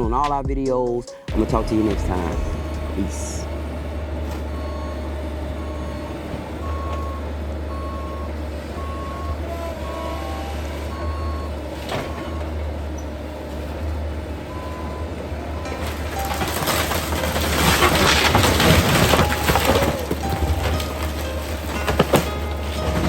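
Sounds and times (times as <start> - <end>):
backup alarm beeping: 0.0 - 13.4, 14.3 - 23.0
diesel engine rumble: 0.0 - 23.0.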